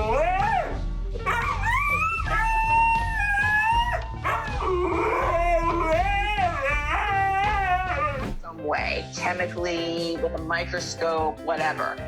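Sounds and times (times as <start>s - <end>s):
husky howling: 0.0s - 8.4s
background music with beat: 0.0s - 12.0s.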